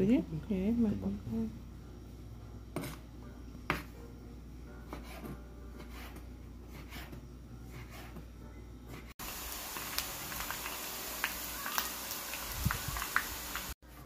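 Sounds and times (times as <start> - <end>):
low steady hum: 0.0 - 9.1.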